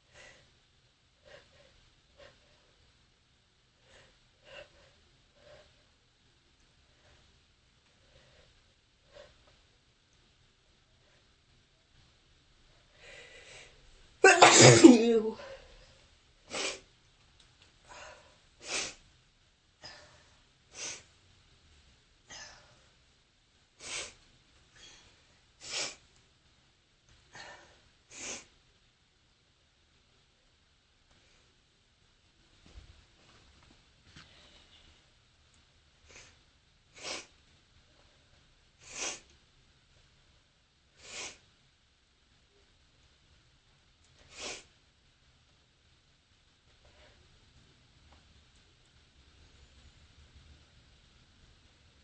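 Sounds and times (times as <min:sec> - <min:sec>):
person sneezing: 0:14.2 - 0:15.5.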